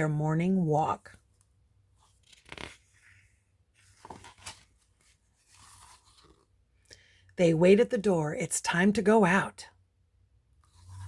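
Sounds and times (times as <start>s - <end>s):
book pages rustling and turning: 1.1s - 6.7s.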